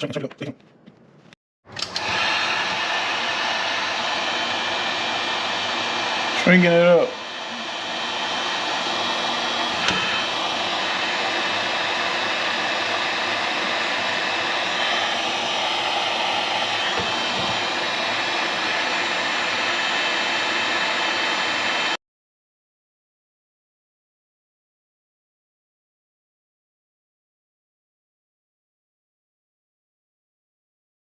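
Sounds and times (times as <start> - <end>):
heat gun blowing: 1.8 - 22.0.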